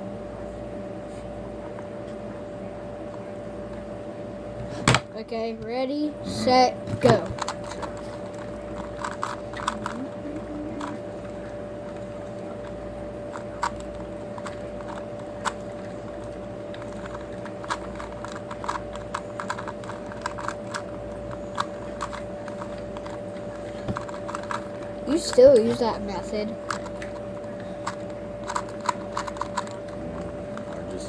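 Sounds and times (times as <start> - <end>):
puzzle cubes clicking: 7.0 - 11.1, 16.8 - 30.8.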